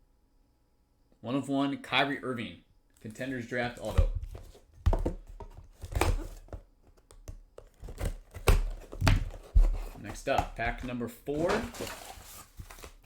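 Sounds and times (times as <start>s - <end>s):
cards and packaging rustling: 3.0s - 13.0s.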